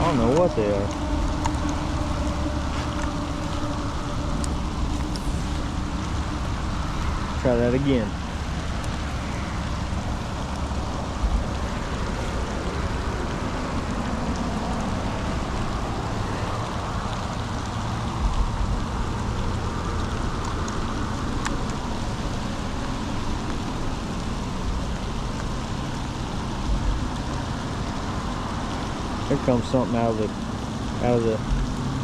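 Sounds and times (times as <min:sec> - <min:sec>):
dull low thumps: 0:00.0 - 0:22.9
rain on boat and water: 0:00.0 - 0:32.0.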